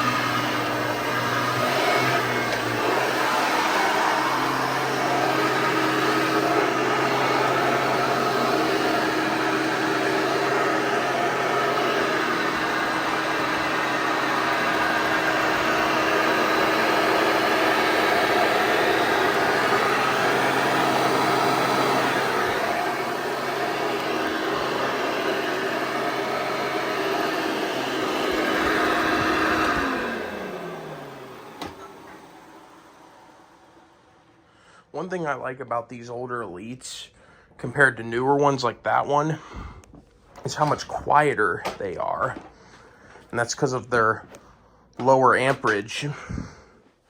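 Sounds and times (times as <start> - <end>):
upright vacuum cleaner running: 0.0 - 34.5.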